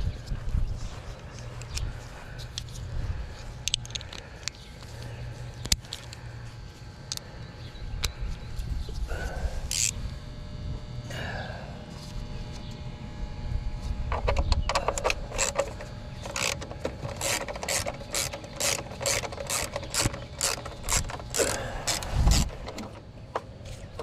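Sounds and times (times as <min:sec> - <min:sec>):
ratchet wrench clicking: 0:09.7 - 0:10.0, 0:14.1 - 0:23.0.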